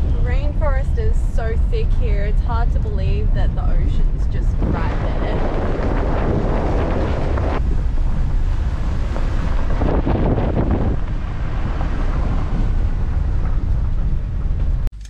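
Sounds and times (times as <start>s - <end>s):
wind buffeting microphone: 0.0s - 14.9s.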